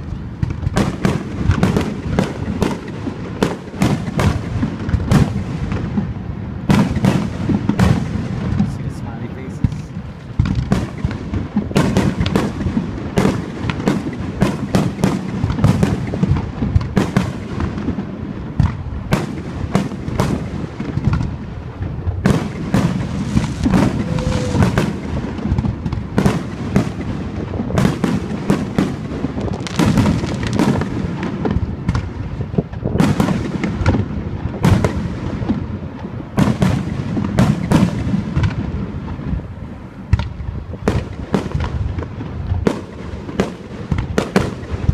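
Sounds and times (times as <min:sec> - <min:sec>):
fireworks bursting and crackling: 0:00.0 - 0:44.9
firework whistle: 0:23.1 - 0:25.3
low rumble: 0:23.2 - 0:25.2.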